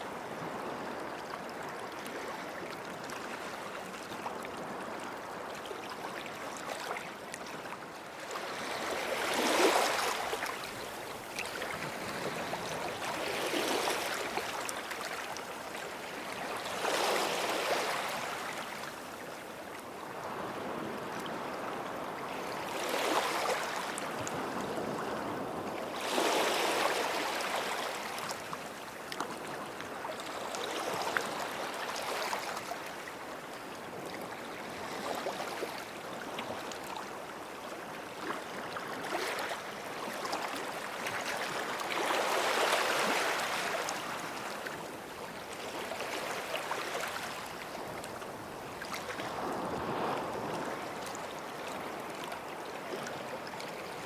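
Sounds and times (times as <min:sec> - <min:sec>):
small waves breaking on sand: 0:07.7 - 0:19.2, 0:20.1 - 0:33.2, 0:38.0 - 0:54.0.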